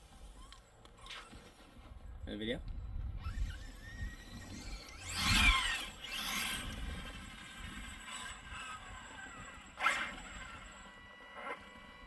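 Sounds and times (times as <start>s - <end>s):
electric motor whine revving: 3.2s - 12.0s.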